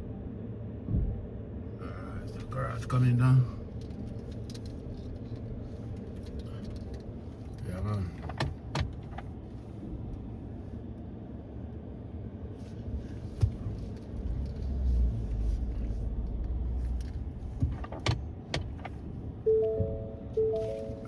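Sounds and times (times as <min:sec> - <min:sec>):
truck engine rumbling: 0:11.8 - 0:21.0
sharp clicks and knocks: 0:17.0 - 0:19.0.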